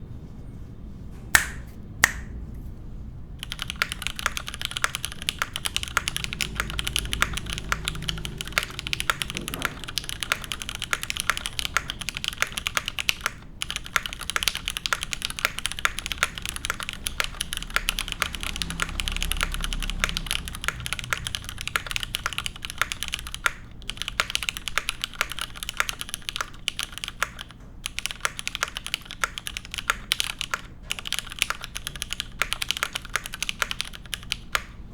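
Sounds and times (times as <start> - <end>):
sharp loud clicks: 1.4 - 2.4
mechanical keyboard typing: 3.4 - 34.9.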